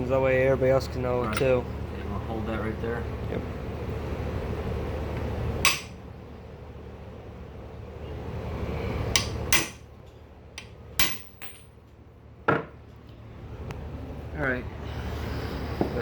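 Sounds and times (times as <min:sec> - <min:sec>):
hammer strikes on metal: 0:05.6 - 0:06.0, 0:09.2 - 0:09.8, 0:10.6 - 0:11.6.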